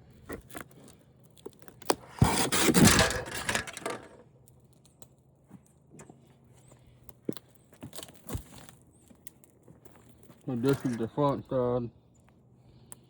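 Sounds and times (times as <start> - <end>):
scraping and rubbing of parts: 1.9 - 4.2.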